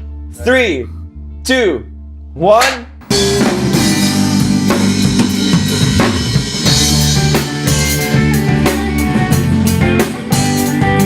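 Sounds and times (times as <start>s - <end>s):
drum kit beat: 2.6s - 11.0s
rock band playing: 3.0s - 11.0s.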